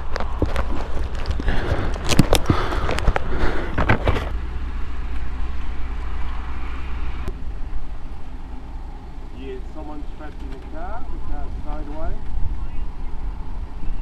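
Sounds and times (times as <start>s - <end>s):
knocks and rustling on microphone: 0.0s - 4.4s
low vehicle rumble: 0.0s - 14.0s.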